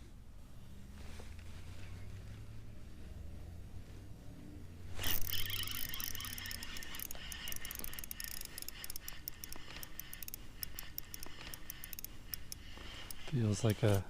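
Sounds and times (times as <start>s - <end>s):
fishing reel clicking: 5.0s - 14.0s.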